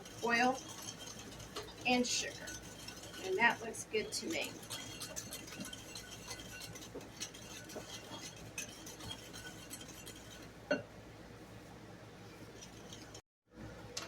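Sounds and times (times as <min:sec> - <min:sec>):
kitchen utensils and dishes clinking: 0:00.0 - 0:10.5.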